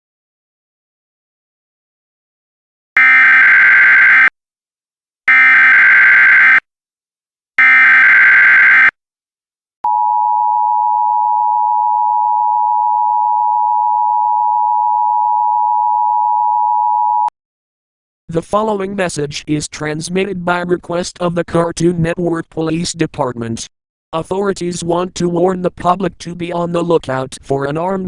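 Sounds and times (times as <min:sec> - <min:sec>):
data bursts: 0:05.3 - 0:06.6, 0:07.6 - 0:08.9
two-tone attention signal: 0:07.6 - 0:08.9.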